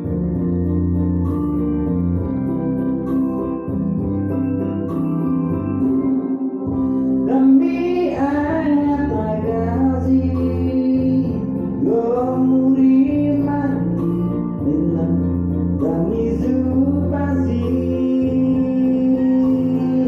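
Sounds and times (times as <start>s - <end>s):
instrumental backing: 0.0s - 20.0s
person singing: 5.8s - 20.0s.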